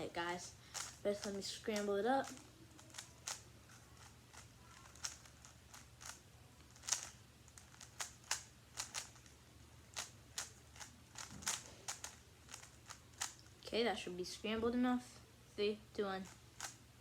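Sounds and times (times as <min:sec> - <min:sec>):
puzzle cube plastic clicks: 0:00.7 - 0:09.3, 0:09.9 - 0:13.5, 0:16.6 - 0:16.8.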